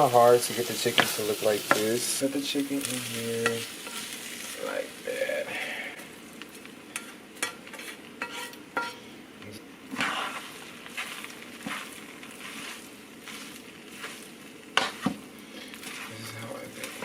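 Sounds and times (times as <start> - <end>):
food sizzling in a pan: 0.0 - 17.0
utensil scraping against pan: 6.9 - 9.0, 9.9 - 17.0.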